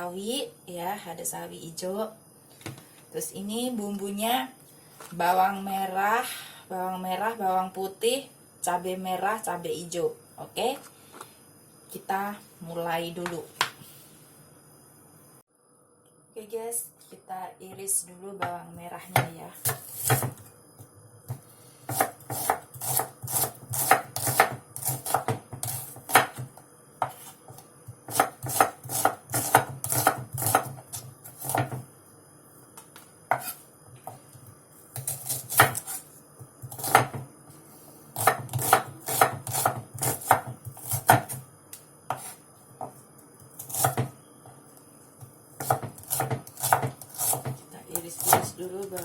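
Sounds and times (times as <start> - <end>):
knife chopping on cutting board: 19.1 - 20.5, 21.3 - 31.8, 33.3 - 34.2, 34.9 - 36.0, 36.6 - 37.3, 38.2 - 41.4, 42.1 - 43.0, 43.6 - 44.1, 45.6 - 47.6, 48.2 - 49.0.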